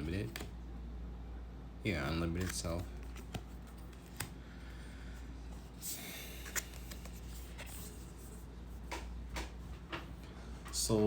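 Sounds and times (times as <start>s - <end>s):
steady low hum: 0.0s - 11.0s
card sliding rustle: 2.3s - 4.4s, 5.5s - 9.6s.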